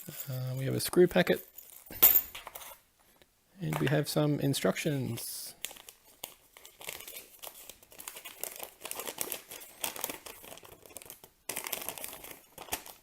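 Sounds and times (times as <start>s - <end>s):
paper crinkling and rustling: 5.6s - 13.0s.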